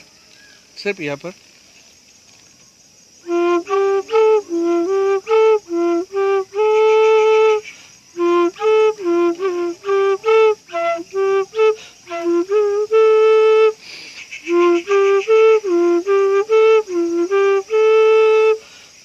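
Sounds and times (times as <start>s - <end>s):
bamboo flute playing short notes: 3.3s - 13.8s, 14.4s - 18.6s.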